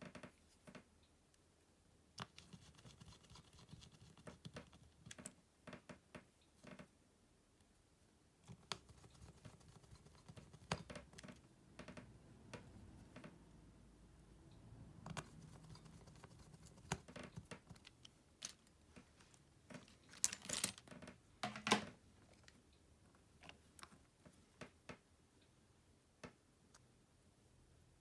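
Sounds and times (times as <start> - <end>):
small tools clicking and tapping: 15.1 - 18.7.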